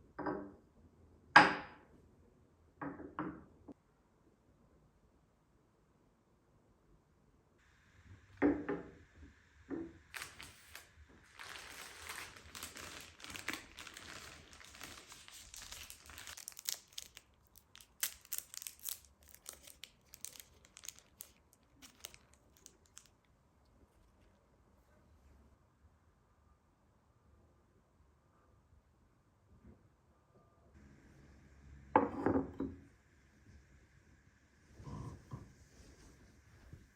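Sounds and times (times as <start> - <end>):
plastic wrapper crinkling: 10.1 - 23.3.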